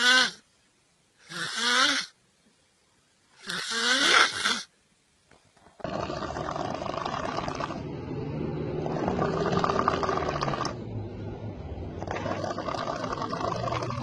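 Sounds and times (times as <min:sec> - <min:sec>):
man snoring loudly: 0:01.3 - 0:02.1, 0:03.5 - 0:04.7, 0:05.8 - 0:10.8, 0:12.0 - 0:14.0.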